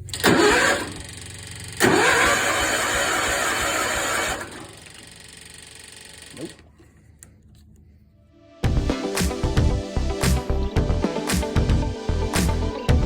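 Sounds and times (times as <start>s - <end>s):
electric starter cranking engine: 0.0s - 6.7s.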